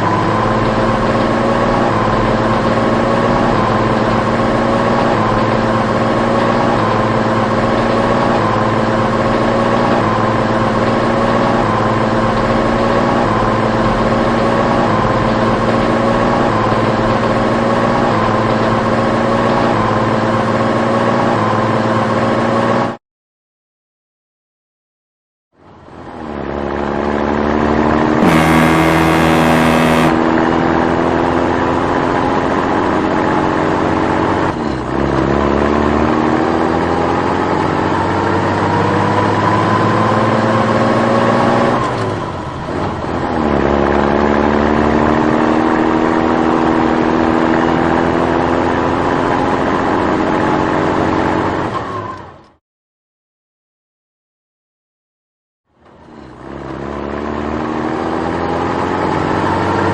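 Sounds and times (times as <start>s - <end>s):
vehicle engine accelerating: 0.0s - 23.0s, 25.9s - 52.2s, 56.0s - 59.9s.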